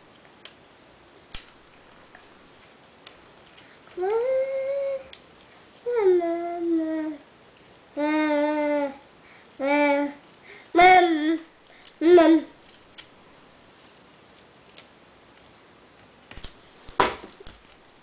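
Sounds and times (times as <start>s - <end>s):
young child making vocal noises: 4.0s - 5.1s, 5.8s - 7.3s, 8.0s - 10.2s, 10.8s - 12.6s.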